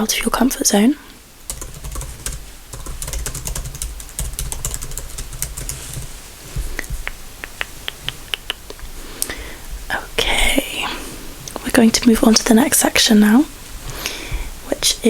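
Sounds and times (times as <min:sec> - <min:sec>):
typing on computer keyboard: 0:01.5 - 0:06.1.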